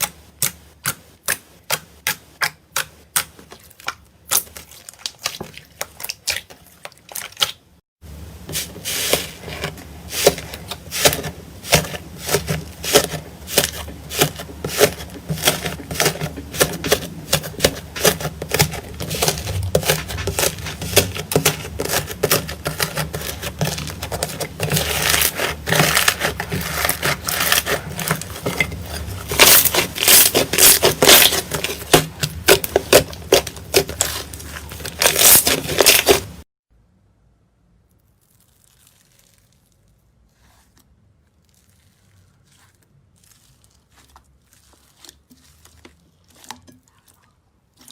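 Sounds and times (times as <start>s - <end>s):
slime squishing with crackling pops: 10.2s - 36.4s, 37.8s - 47.9s.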